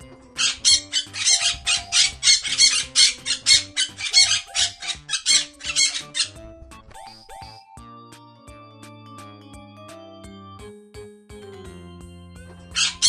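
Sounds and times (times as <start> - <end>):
soft background music: 0.0 - 13.0
parrot squawking: 0.4 - 6.4.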